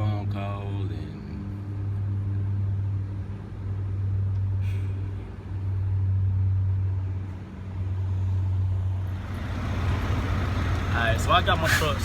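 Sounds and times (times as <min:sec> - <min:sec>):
heavy truck engine idling: 0:09.0 - 0:12.0.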